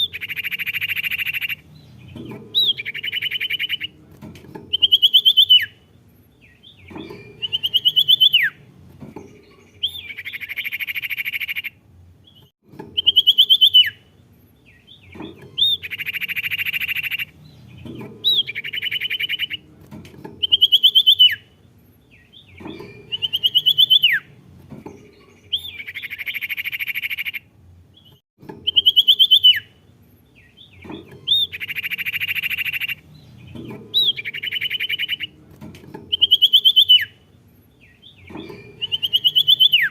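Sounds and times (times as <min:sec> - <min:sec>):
bird whistling and chattering: 0:00.0 - 0:01.6, 0:02.5 - 0:03.9, 0:04.7 - 0:05.8, 0:07.0 - 0:08.6, 0:09.8 - 0:11.8, 0:13.0 - 0:14.0, 0:15.5 - 0:17.3, 0:18.2 - 0:19.6, 0:20.4 - 0:21.5, 0:22.7 - 0:24.3, 0:25.5 - 0:27.4, 0:28.6 - 0:29.7, 0:30.8 - 0:33.0, 0:33.9 - 0:35.3, 0:36.1 - 0:37.2, 0:38.2 - 0:39.9.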